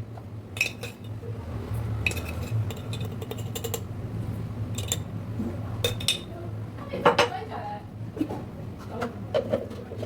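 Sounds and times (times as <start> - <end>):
spoon clinking against dishes: 0.6 - 1.2, 2.1 - 3.9, 4.8 - 5.1, 5.8 - 6.3.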